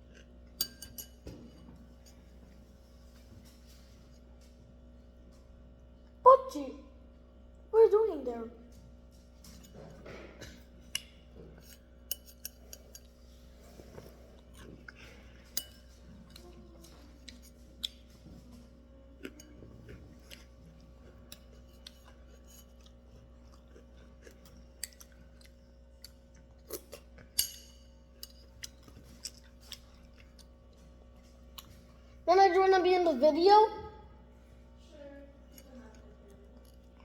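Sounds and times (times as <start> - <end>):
faint steady hum: 0.0 - 37.0.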